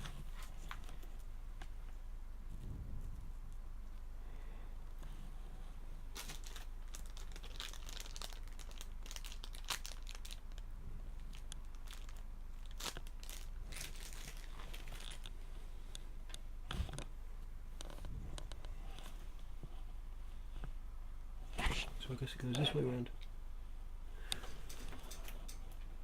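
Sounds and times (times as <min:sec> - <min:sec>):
steady low hum: 0:00.0 - 0:26.0
plastic packaging crinkling: 0:06.1 - 0:15.4.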